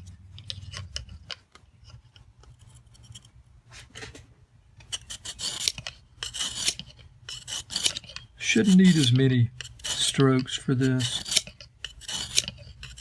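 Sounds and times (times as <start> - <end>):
sharpening stone rasping on steel: 4.9 - 13.0.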